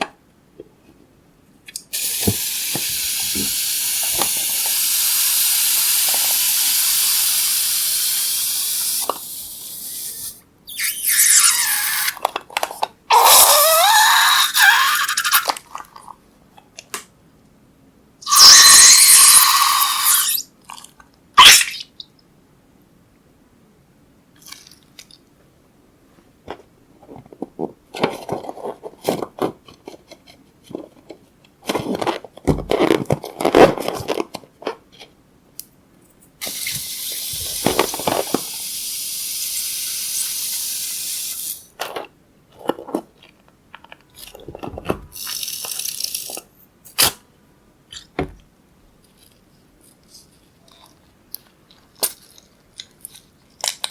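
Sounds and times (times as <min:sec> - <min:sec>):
steady hiss: 0:01.8 - 0:12.2, 0:36.4 - 0:41.8.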